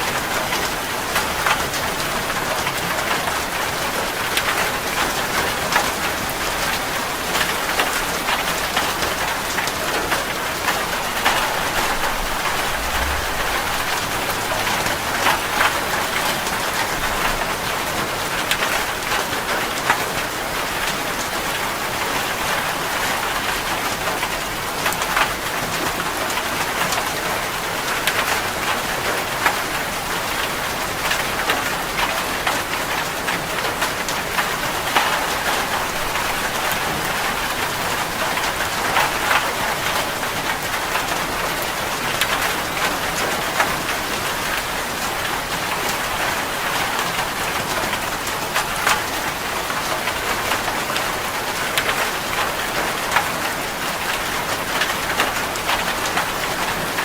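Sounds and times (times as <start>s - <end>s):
heavy rain on a metal roof: 0.0s - 57.0s.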